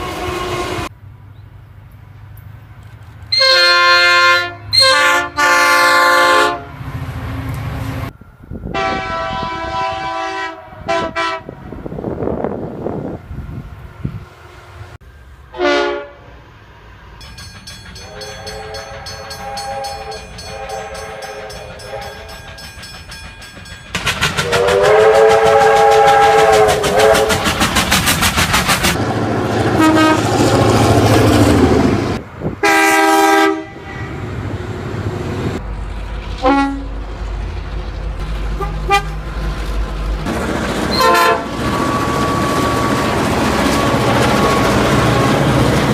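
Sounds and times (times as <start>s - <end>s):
train horn blasts: 0.0s - 0.9s, 3.3s - 7.0s, 8.6s - 11.6s, 15.5s - 16.3s, 18.0s - 22.5s, 24.4s - 27.5s, 29.7s - 30.3s, 32.6s - 34.3s, 36.4s - 37.0s, 38.6s - 39.2s, 40.9s - 42.9s
passing train rumble and clatter: 0.0s - 45.9s.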